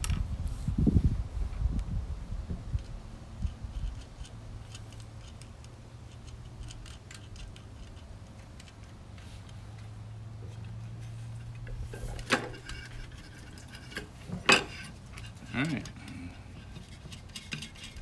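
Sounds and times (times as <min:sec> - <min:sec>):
low steady hum: 0:00.0 - 0:18.0
small hand tools clicking on screws: 0:03.7 - 0:09.9.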